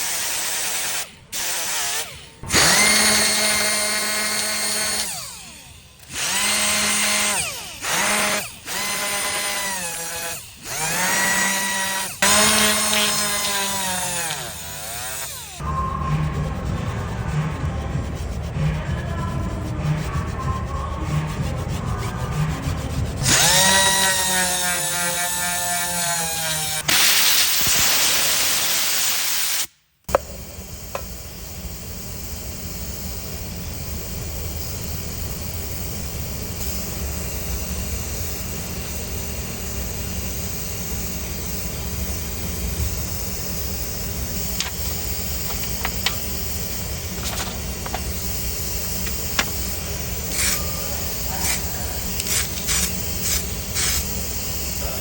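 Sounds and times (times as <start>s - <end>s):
power tool whine winding down: 0.0s - 15.7s, 23.2s - 26.9s
steady sanding noise: 6.2s - 26.8s, 32.4s - 55.0s.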